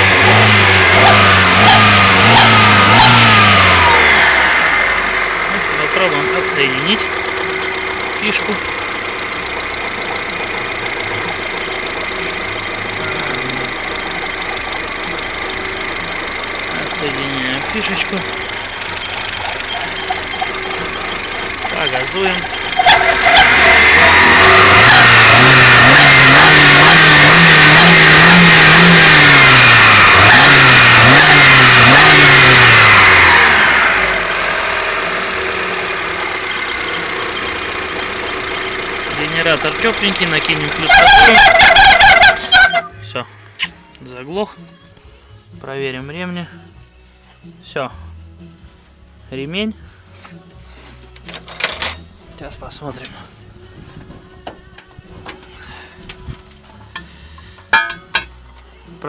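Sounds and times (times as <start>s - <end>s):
car engine idling: 0.0s - 43.7s, 51.2s - 58.7s
high-pitched whine: 3.6s - 9.4s.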